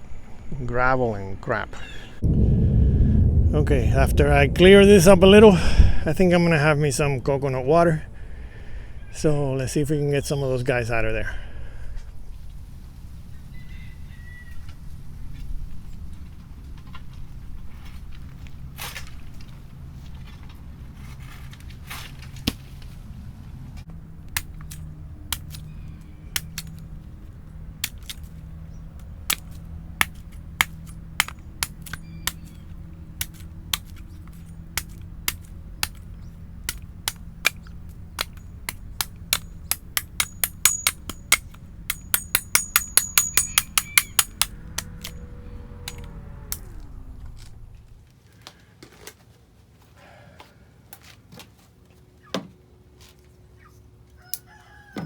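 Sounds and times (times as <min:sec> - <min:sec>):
steady low hum: 0:02.1 - 0:14.1, 0:23.2 - 0:48.0
sharp knocks: 0:34.8 - 0:48.0.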